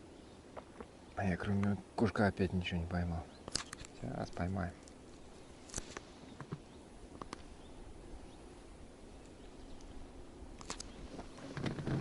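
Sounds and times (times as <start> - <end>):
faint background noise: 0.0 - 12.0
light sharp clicks: 3.4 - 5.0, 7.2 - 7.5, 10.6 - 11.3.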